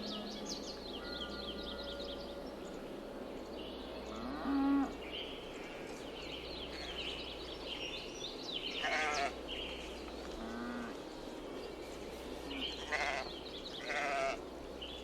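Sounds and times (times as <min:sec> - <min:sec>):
livestock bleating: 0:08.8 - 0:09.3, 0:12.8 - 0:14.4.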